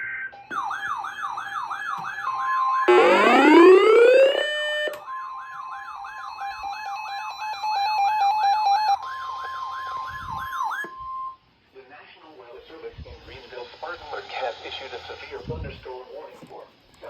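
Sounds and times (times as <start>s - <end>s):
warbling siren-like tone: 0.7s - 8.9s
rising electronic alert sweep: 2.9s - 4.9s
pulsing beeps: 2.9s - 5.0s.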